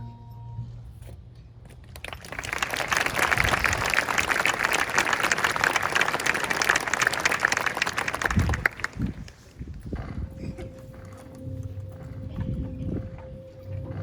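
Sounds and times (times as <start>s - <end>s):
audience applauding: 2.0s - 9.4s.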